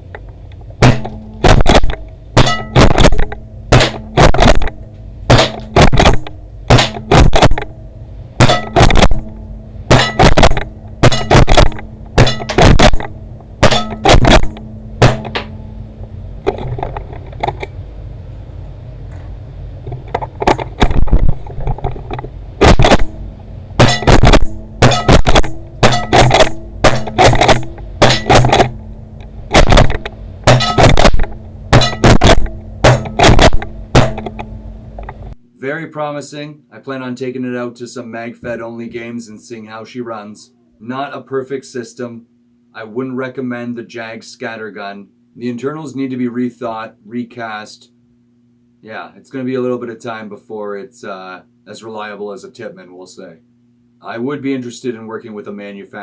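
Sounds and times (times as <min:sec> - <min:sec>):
low hum: 0:00.0 - 0:35.5
paintball gun firing and pumping: 0:00.8 - 0:07.7, 0:08.4 - 0:09.3, 0:09.9 - 0:15.5, 0:22.6 - 0:23.2, 0:23.8 - 0:28.8, 0:29.5 - 0:34.5.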